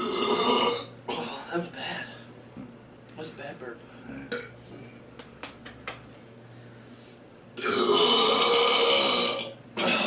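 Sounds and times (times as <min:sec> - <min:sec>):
man belching: 0:00.0 - 0:01.3, 0:04.3 - 0:04.5, 0:07.6 - 0:10.0.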